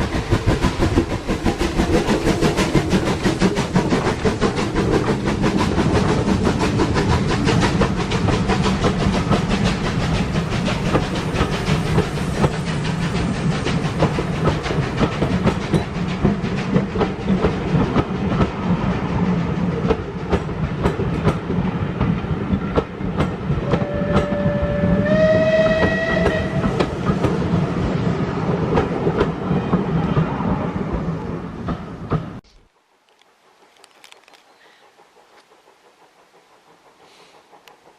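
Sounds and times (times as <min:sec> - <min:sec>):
train wheels clattering over rails: 0:00.0 - 0:32.4, 0:33.6 - 0:37.9
locomotive whistle: 0:23.6 - 0:26.9.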